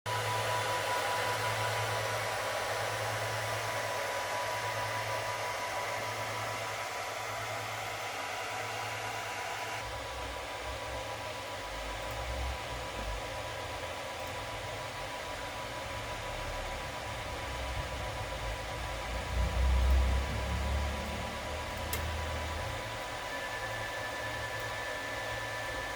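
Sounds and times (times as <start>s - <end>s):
high tone: 22.6s - 25.9s.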